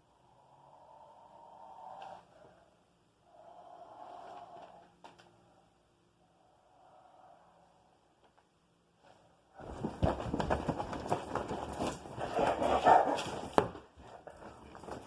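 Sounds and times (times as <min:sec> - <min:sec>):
rapid thuds and knocks: 0:09.6 - 0:15.0.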